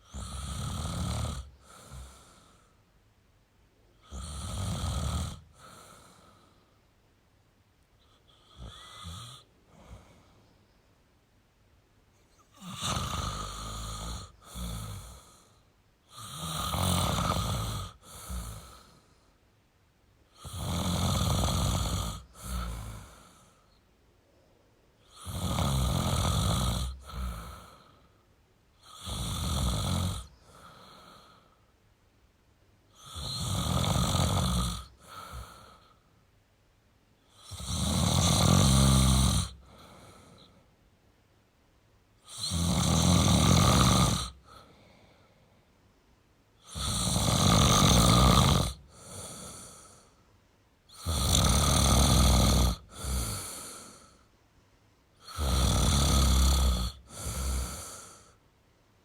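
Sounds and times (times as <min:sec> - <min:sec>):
person snoring loudly: 0:00.0 - 0:02.4, 0:04.0 - 0:06.2, 0:08.3 - 0:10.1, 0:12.5 - 0:15.5, 0:16.1 - 0:18.9, 0:20.3 - 0:23.5, 0:25.0 - 0:27.9, 0:28.8 - 0:31.4, 0:33.0 - 0:35.8, 0:37.3 - 0:40.5, 0:42.2 - 0:44.6, 0:46.6 - 0:50.1, 0:50.9 - 0:54.2, 0:55.2 - 0:58.4
quiet breath: 0:01.3 - 0:04.3, 0:05.2 - 0:16.5, 0:17.3 - 0:20.8, 0:21.4 - 0:25.4, 0:26.2 - 0:29.1, 0:29.7 - 0:32.0, 0:34.7 - 0:36.4, 0:38.5 - 0:41.0, 0:44.0 - 0:46.9, 0:48.6 - 0:51.1, 0:51.9 - 0:55.6, 0:56.2 - 0:59.0.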